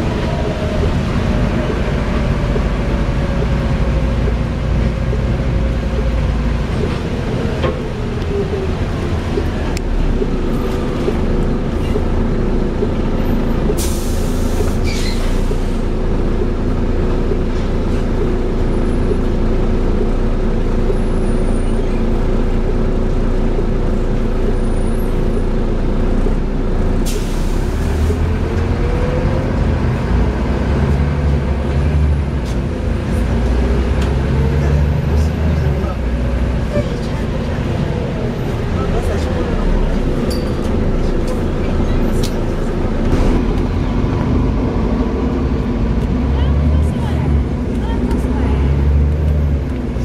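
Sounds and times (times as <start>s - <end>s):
bus engine running: 0.0s - 50.0s
compressed air hisses: 13.8s - 15.8s.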